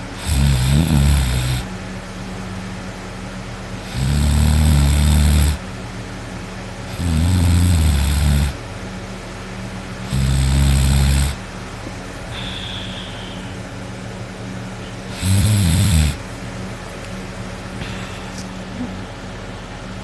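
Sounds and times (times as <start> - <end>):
person snoring heavily: 0.0 - 1.7, 3.8 - 5.6, 6.9 - 8.6, 10.0 - 11.4, 12.3 - 13.5, 15.1 - 16.2.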